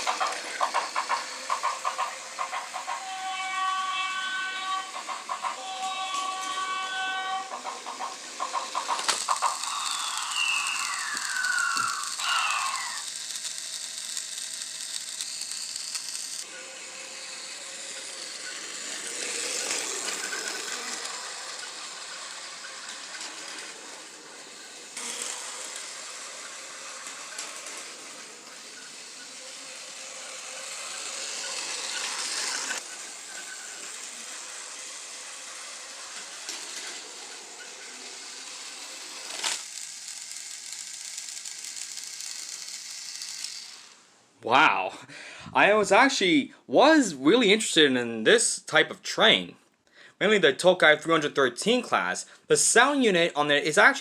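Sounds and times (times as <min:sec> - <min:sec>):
toy train motor whirring: 0:00.0 - 0:44.3
falling electronic whine: 0:09.4 - 0:13.0.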